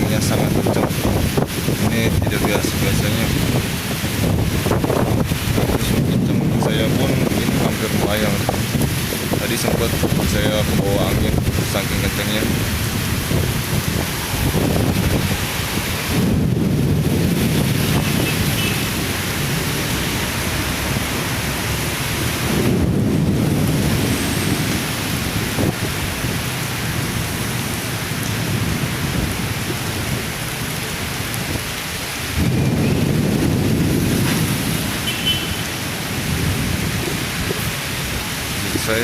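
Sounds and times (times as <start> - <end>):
heavy rain and wind: 0.0 - 39.0.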